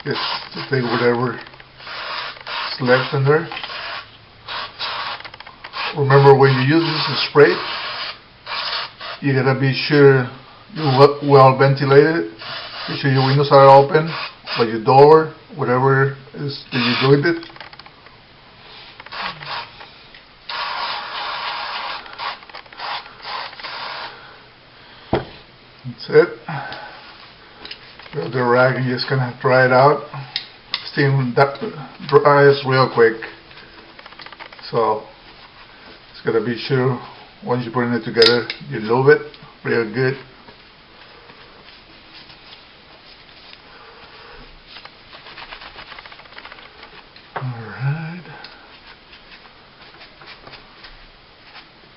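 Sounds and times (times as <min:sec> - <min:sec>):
rag rubbing pistol parts: 0:00.0 - 0:09.2, 0:20.5 - 0:24.2
aerosol spray hissing: 0:01.8 - 0:06.0, 0:06.8 - 0:09.2
light scratchy ticks: 0:44.8 - 0:47.0.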